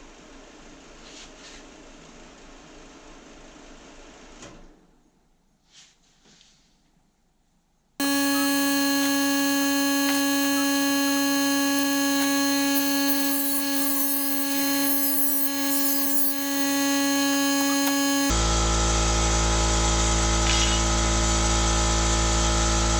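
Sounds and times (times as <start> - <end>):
power tool motor whining: 8.0 - 18.4.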